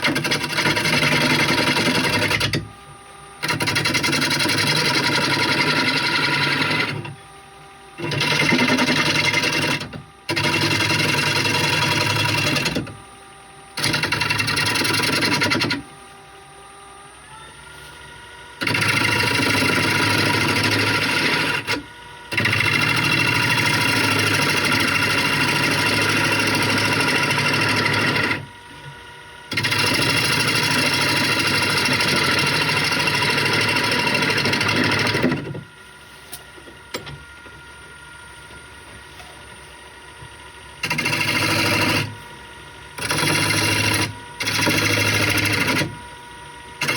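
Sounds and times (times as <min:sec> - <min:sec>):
gouge scraping spinning wood: 0:00.0 - 0:02.7, 0:03.4 - 0:07.2, 0:08.0 - 0:13.0, 0:13.8 - 0:15.8, 0:18.6 - 0:28.9, 0:29.5 - 0:35.7, 0:40.8 - 0:46.0
lathe motor whine: 0:00.0 - 0:46.9.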